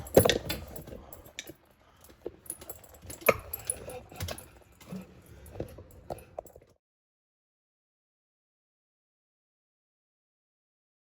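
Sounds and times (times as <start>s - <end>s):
metallic clinks of plumbing fittings: 0.0s - 6.7s.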